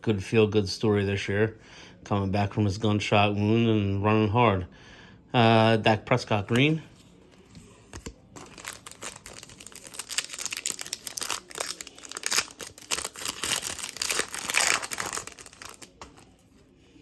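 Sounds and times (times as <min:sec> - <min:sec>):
plastic foil wrapper crinkling: 0:08.0 - 0:16.5.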